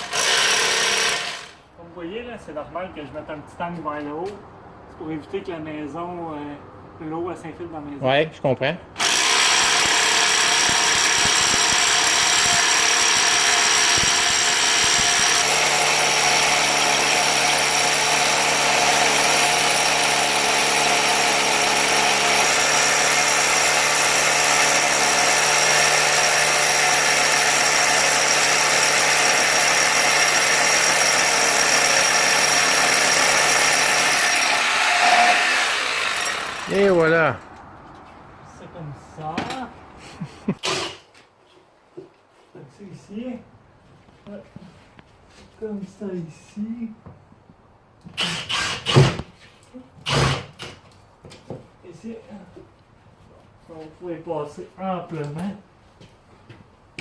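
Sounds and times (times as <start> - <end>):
electric drill boring into wall: 0.0 - 1.6, 9.0 - 37.1, 48.2 - 49.3, 50.1 - 50.7.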